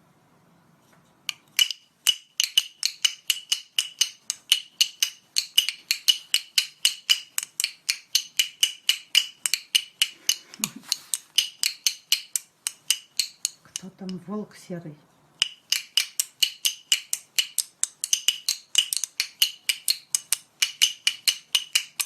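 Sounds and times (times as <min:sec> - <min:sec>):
rapid ringing taps: 0:01.3 - 0:10.4.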